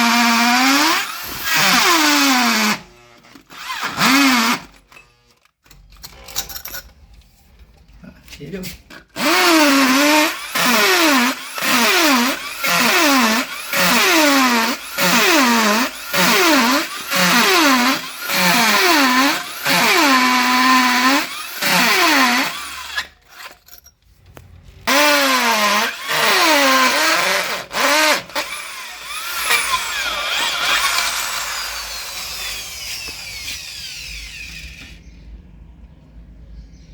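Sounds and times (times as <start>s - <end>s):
electric drill boring into concrete: 0.0s - 4.7s, 9.2s - 23.6s, 24.9s - 35.0s.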